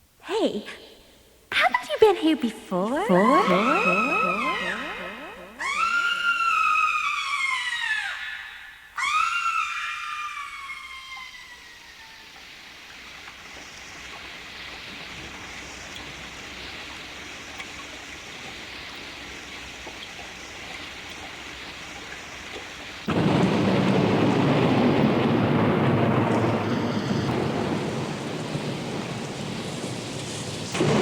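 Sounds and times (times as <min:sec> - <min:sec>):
steady rain: 0:01.3 - 0:31.0
thunder crack and rumble: 0:22.9 - 0:31.0.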